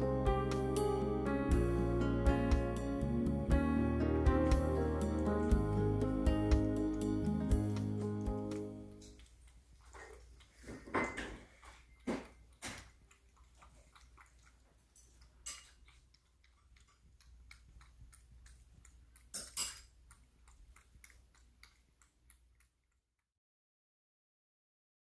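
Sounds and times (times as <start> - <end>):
cat chewing and licking: 4.3 - 23.3.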